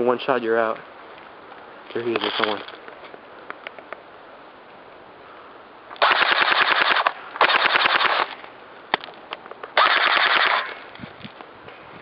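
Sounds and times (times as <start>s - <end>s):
airsoft rifle full-auto bursts: 6.0s - 8.4s, 9.8s - 10.8s.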